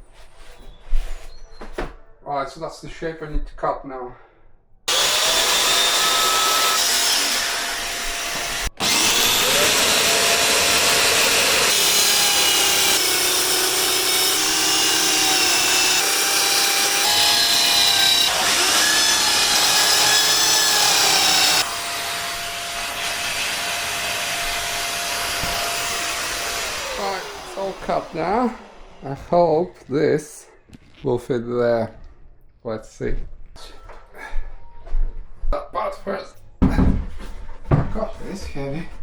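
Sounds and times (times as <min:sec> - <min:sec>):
electric power saw cutting: 0:04.9 - 0:29.9.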